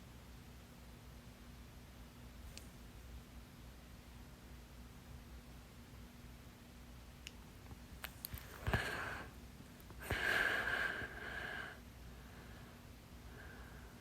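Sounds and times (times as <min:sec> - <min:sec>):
person breathing: 0:08.4 - 0:09.4, 0:10.0 - 0:14.0.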